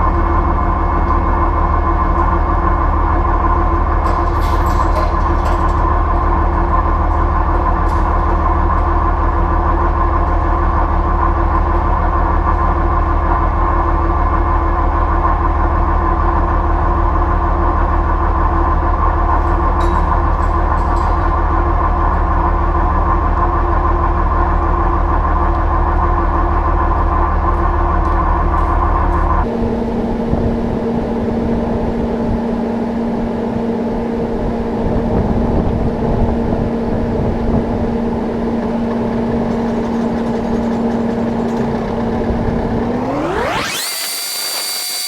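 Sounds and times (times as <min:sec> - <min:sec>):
combine harvester mechanical drone: 0:00.0 - 0:45.0
deep hum: 0:40.6 - 0:45.0.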